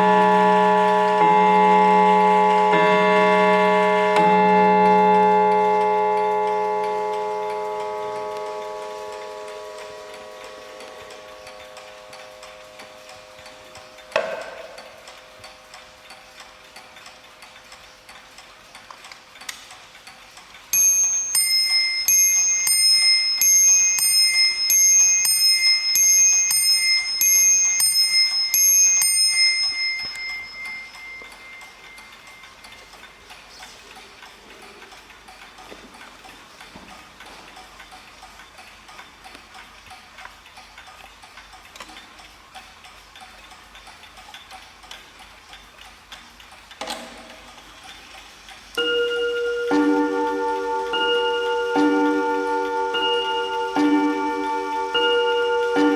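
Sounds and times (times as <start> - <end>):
low gong note: 0.0 - 12.8, 49.0 - 55.9
clock bells striking: 0.0 - 15.8, 20.8 - 33.5, 48.8 - 55.9
clocks ticking: 0.0 - 55.9.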